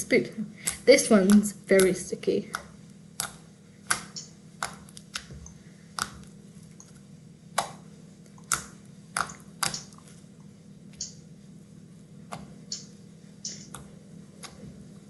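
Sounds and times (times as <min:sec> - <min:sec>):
steady low hum: 0:00.0 - 0:15.0
slime popping and clicking: 0:02.5 - 0:05.3, 0:08.4 - 0:10.0.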